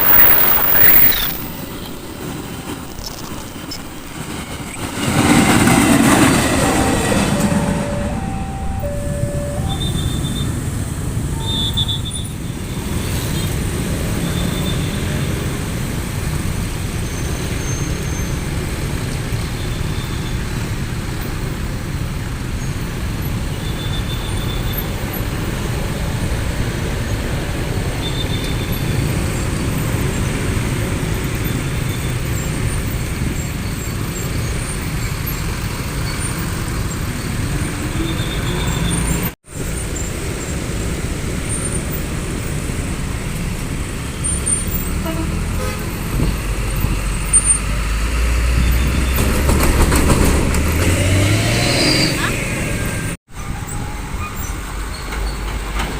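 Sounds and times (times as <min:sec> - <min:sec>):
heavy vehicles rumbling past: 0:00.0 - 0:55.9
faint high peeps: 0:07.3 - 0:10.6.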